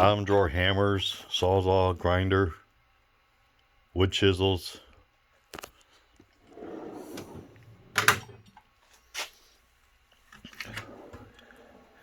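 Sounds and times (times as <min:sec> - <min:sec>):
metal drawers sliding: 0:06.5 - 0:08.5, 0:10.5 - 0:11.8
drawer clacking shut: 0:06.6 - 0:08.4
tools shifting inside drawers: 0:10.3 - 0:11.8.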